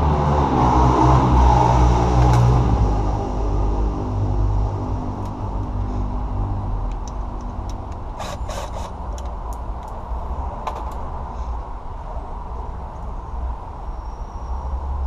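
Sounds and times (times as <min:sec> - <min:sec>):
sharp clicks and rattles: 0:06.8 - 0:10.0.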